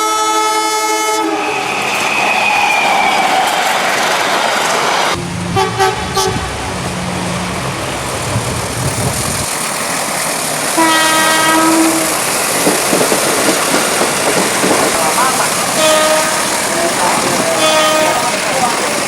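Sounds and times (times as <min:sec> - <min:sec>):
train horn blasts: 0:00.0 - 0:01.7, 0:05.2 - 0:07.7, 0:10.8 - 0:12.1, 0:15.8 - 0:16.5, 0:17.6 - 0:18.3
rush and rumble of moving train: 0:00.0 - 0:19.0
low engine hum: 0:05.2 - 0:09.5.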